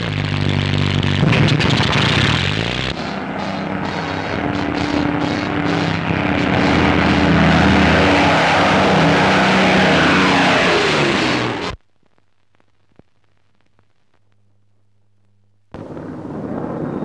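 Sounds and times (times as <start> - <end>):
propeller plane engines droning: 0.0 - 11.8.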